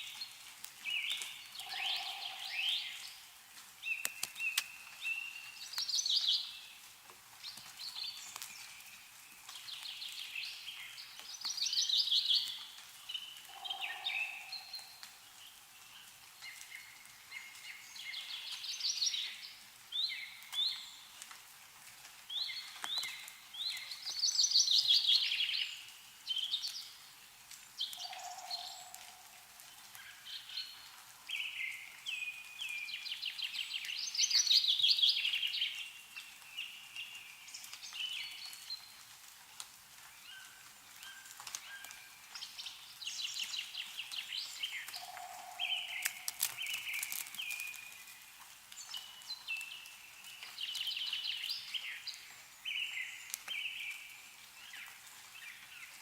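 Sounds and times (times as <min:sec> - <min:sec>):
meltwater dripping: 0:00.0 - 0:56.0
songbirds trilling: 0:01.0 - 0:03.2, 0:13.2 - 0:15.6, 0:27.9 - 0:29.5, 0:41.8 - 0:48.2.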